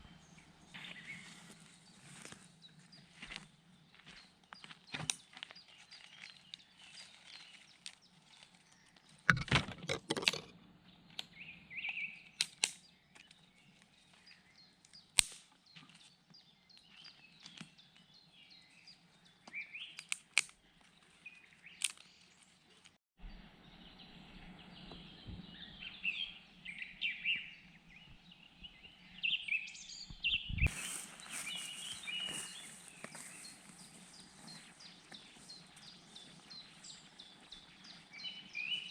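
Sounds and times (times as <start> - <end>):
sharp clicks and cracks: 12.4 - 13.4, 14.8 - 15.6, 20.0 - 20.6, 21.8 - 22.1
birds chirping and calling: 23.3 - 38.9.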